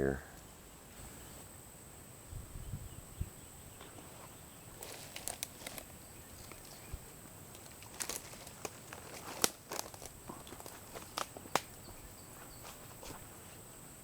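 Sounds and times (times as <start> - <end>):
insect drone: 0.0 - 14.0
footsteps wading on gravel: 4.8 - 13.3.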